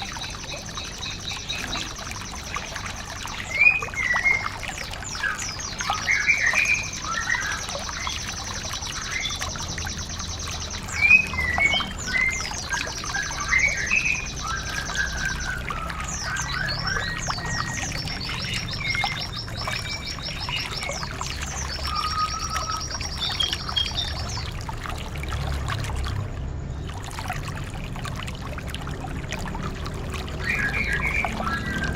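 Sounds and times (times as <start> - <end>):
songbirds singing: 0.0 - 31.9
trickling water: 0.0 - 31.9.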